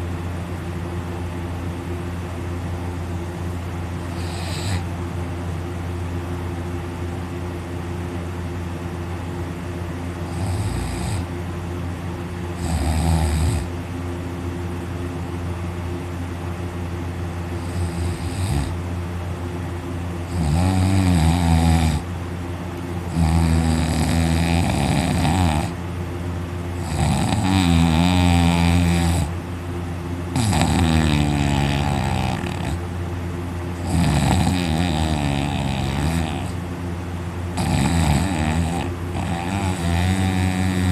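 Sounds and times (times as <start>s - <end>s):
steady low hum: 0.0s - 40.9s
person snoring loudly: 4.0s - 4.9s, 10.2s - 11.3s, 12.6s - 13.7s, 17.6s - 18.8s, 20.3s - 22.1s, 23.1s - 25.8s, 26.8s - 29.4s, 30.3s - 32.8s, 33.8s - 36.6s, 37.6s - 40.9s.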